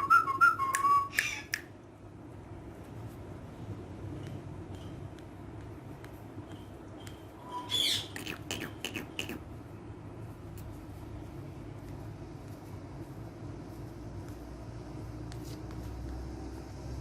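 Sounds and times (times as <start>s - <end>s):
parrot chirps and clicks: 0.4s - 1.9s, 6.4s - 9.4s
parrot squawk: 1.1s - 1.6s, 7.4s - 9.4s.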